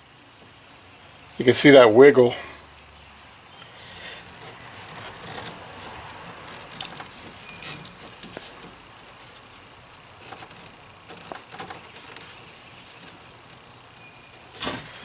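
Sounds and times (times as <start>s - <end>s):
plastic fitting clicks and rubbing: 4.2s - 13.7s.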